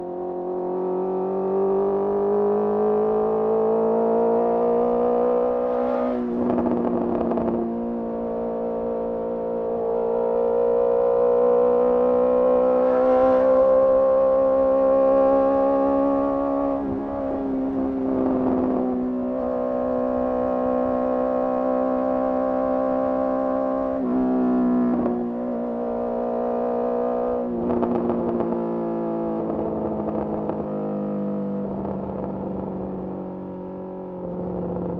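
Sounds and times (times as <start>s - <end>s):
motorcycle engine droning: 0.0s - 34.9s.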